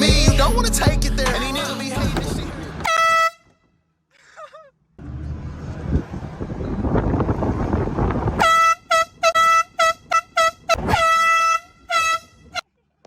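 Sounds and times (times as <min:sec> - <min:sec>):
air horn blasts: 0:02.2 - 0:03.6, 0:08.4 - 0:12.6.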